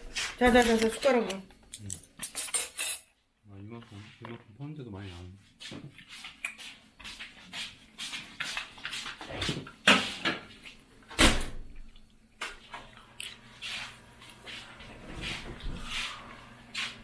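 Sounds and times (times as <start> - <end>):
spoon and dishes clinking: 1.7 - 3.1.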